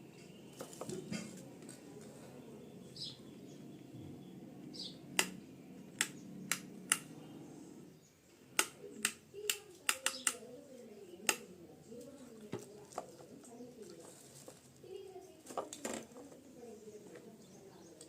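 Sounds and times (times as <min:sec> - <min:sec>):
faint low hum: 0:00.0 - 0:18.0
sharp clicks and taps: 0:05.1 - 0:07.1, 0:08.5 - 0:10.4.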